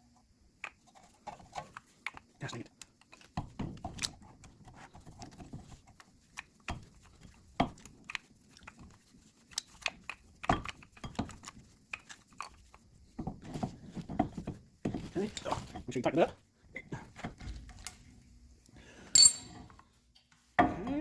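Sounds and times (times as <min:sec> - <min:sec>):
metal brake parts clinking: 0:19.2 - 0:19.6.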